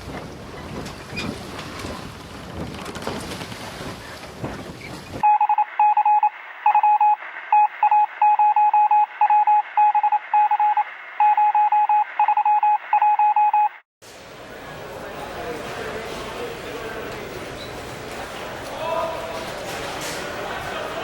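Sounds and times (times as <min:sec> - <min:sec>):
morse code beeps: 0:05.2 - 0:13.8.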